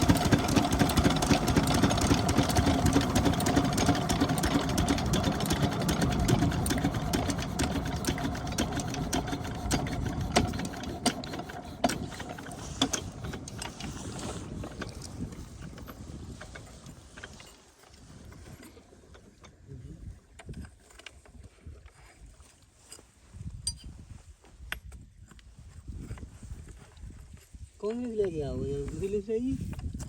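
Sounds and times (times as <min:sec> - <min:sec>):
diesel engine running and slowing: 0:00.0 - 0:17.0.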